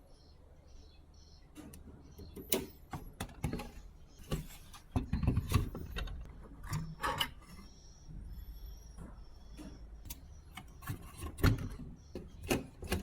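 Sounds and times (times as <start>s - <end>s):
tools and parts clicking and rattling: 2.4s - 7.7s.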